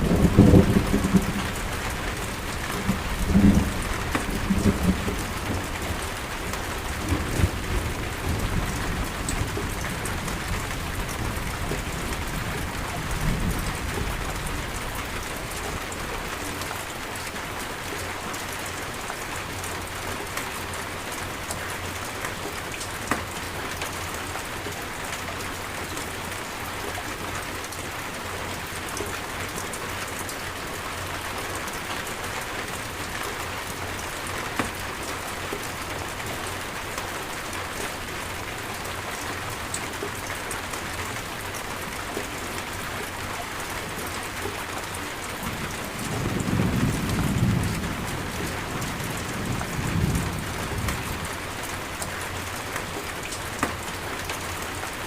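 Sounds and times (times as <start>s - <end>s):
low rumble of thunder: 0.0s - 16.5s, 45.2s - 52.6s
steady rain falling: 0.0s - 55.0s.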